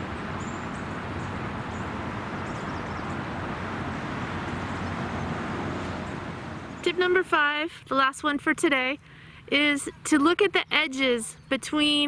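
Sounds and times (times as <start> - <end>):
swallows chirping: 0.0 - 7.0
outdoor background rumble: 0.0 - 12.0.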